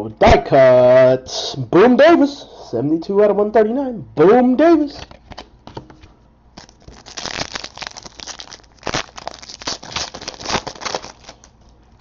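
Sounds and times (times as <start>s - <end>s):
cards rustling and snapping: 5.0s - 11.8s
wrappers crinkling and tearing: 6.6s - 12.0s.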